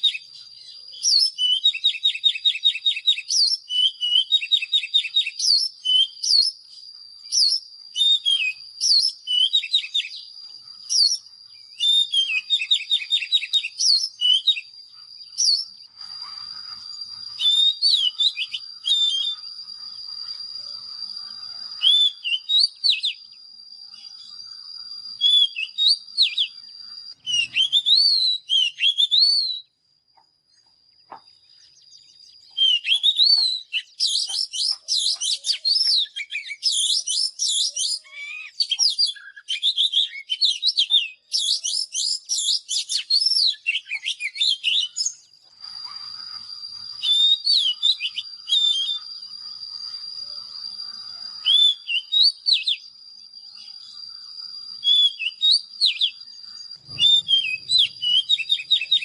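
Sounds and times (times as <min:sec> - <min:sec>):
bird singing whistled phrases: 0:00.0 - 0:29.8, 0:31.4 - 0:59.0.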